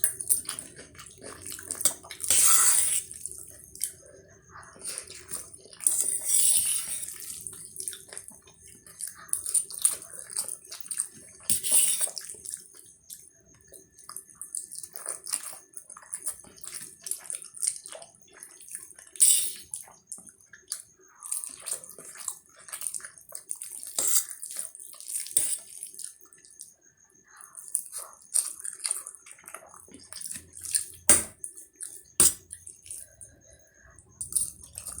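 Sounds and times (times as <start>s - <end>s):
smacking and chewing: 0.0s - 35.0s
person slurping noodles: 2.2s - 3.3s.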